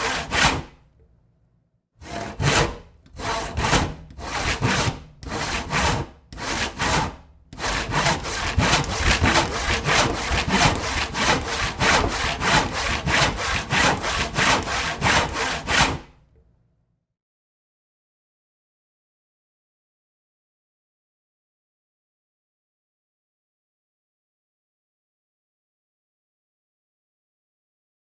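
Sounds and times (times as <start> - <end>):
handsaw cutting wood: 0.0 - 0.8, 2.0 - 16.1.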